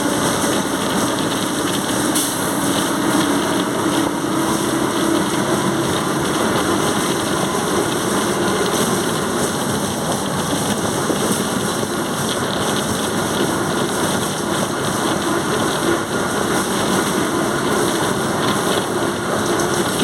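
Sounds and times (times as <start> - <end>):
bus diesel engine running: 0.0 - 20.0.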